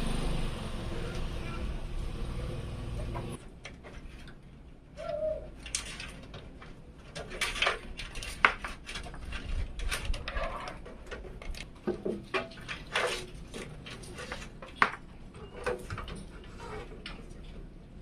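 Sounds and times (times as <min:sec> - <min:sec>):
hands handling computer parts: 0:03.5 - 0:17.6.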